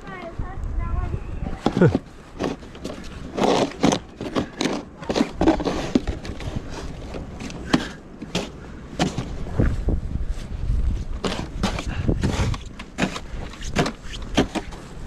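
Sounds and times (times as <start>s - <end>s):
wind rumbling on microphone: 0.0s - 2.4s, 9.0s - 15.0s
snow shovel scraping snow: 1.6s - 7.0s, 11.2s - 15.0s.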